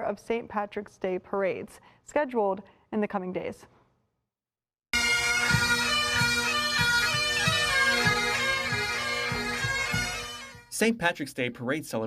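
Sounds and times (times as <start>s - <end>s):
bagpipes playing over drone: 5.0s - 10.7s
drum beating: 5.0s - 10.8s.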